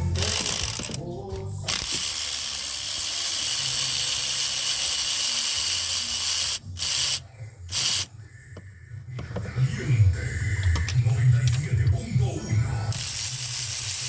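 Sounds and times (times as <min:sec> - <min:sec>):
compressed-air tool running: 0:00.0 - 0:01.0, 0:01.7 - 0:08.1.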